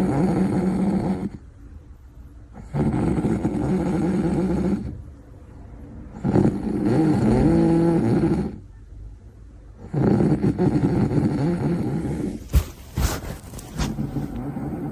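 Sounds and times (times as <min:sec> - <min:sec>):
loud snoring: 0:00.0 - 0:01.4, 0:02.6 - 0:05.0, 0:06.2 - 0:08.6, 0:09.8 - 0:12.8, 0:13.8 - 0:14.9.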